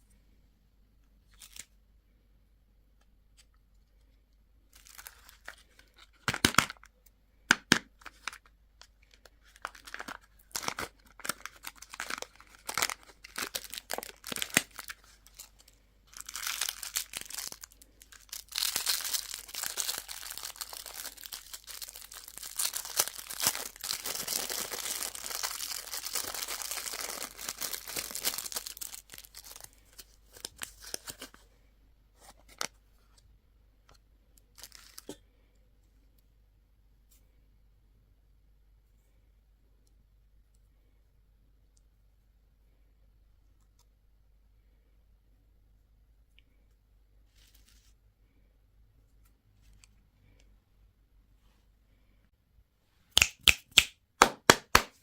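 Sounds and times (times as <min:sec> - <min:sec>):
candy wrapper crinkling and tearing: 0:01.3 - 0:01.8, 0:04.7 - 0:06.9, 0:07.5 - 0:31.4, 0:34.4 - 0:35.2.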